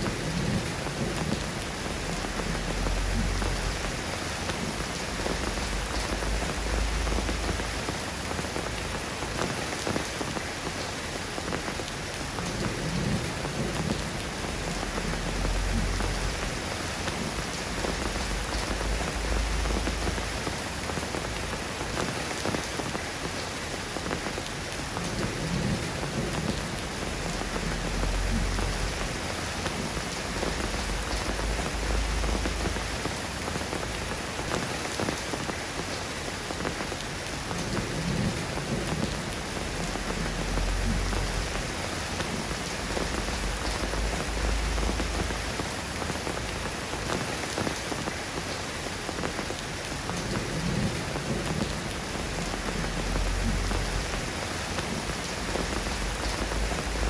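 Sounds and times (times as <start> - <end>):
rain pattering: 0.0 - 57.0
low rumble: 27.1 - 33.0.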